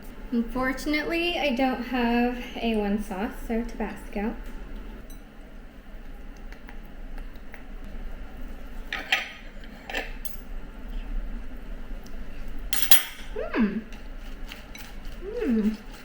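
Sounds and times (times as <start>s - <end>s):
knife and fork clinking on plate: 12.8s - 13.4s.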